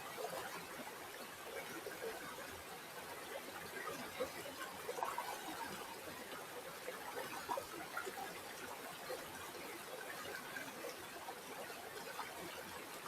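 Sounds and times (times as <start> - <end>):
river water flowing: 0.0 - 13.0.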